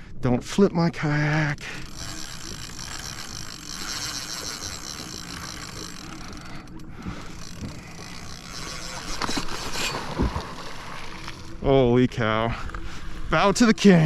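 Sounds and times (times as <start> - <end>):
fishing reel drag clicking: 1.0 - 11.7.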